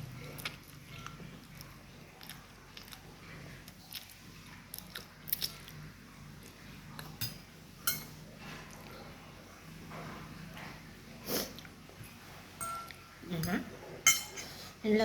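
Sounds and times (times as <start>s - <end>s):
person chewing noodles: 0.0s - 7.2s.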